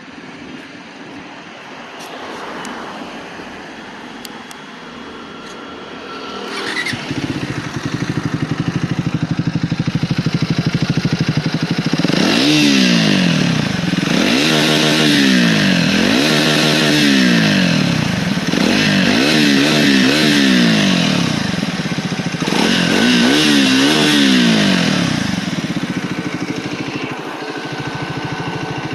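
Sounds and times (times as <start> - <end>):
motorcycle engine revving: 6.1 - 28.9.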